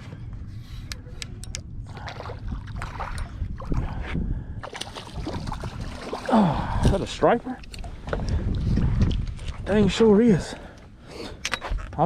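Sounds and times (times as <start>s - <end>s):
wind rumble: 0.0s - 11.0s
water splashing around boat: 1.8s - 8.0s.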